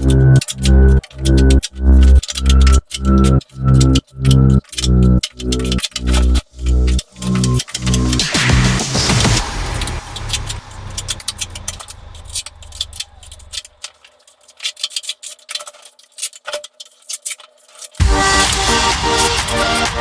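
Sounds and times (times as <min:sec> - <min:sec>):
electronic background music: 0:00.0 - 0:13.9, 0:18.0 - 0:20.0
hand tools clicking and tapping: 0:00.0 - 0:20.0.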